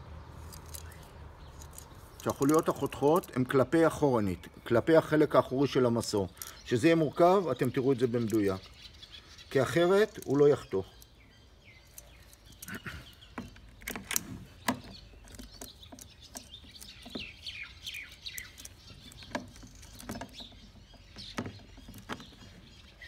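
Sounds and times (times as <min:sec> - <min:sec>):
birds chirping: 0:00.0 - 0:23.0.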